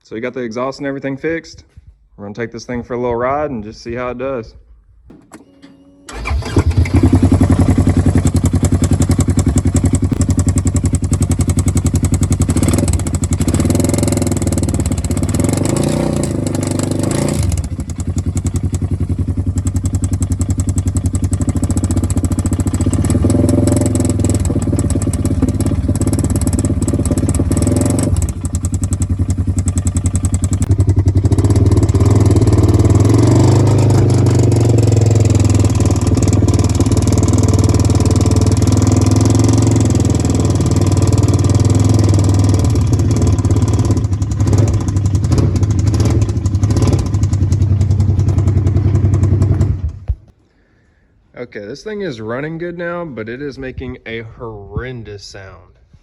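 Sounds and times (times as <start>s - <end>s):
engine revving: 6.1s - 50.3s.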